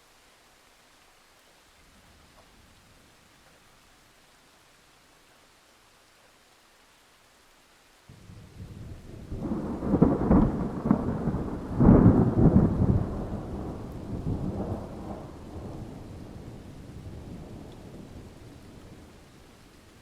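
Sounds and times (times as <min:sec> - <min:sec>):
thunder clap and rumble: 0:08.1 - 0:19.2.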